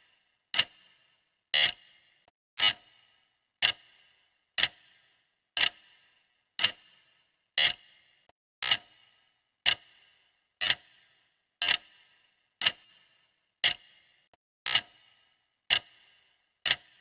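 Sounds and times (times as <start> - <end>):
clock ticking: 0.6 - 0.8, 1.6 - 1.8, 2.6 - 2.9, 3.6 - 4.0, 4.6 - 5.0, 5.6 - 5.8, 6.6 - 6.9, 7.6 - 7.9, 9.7 - 10.0, 10.6 - 10.9, 11.6 - 11.9, 15.7 - 16.0, 16.7 - 17.0.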